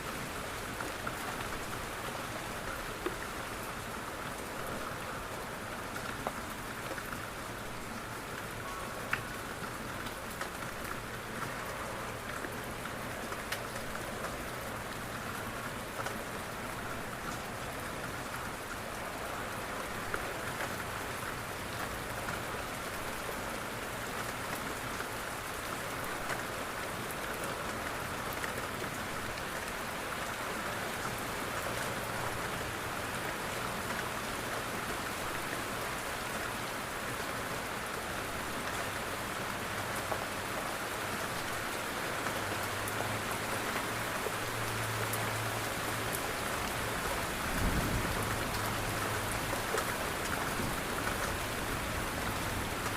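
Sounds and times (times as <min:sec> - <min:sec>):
rain pattering on a window: 0:00.0 - 0:52.9.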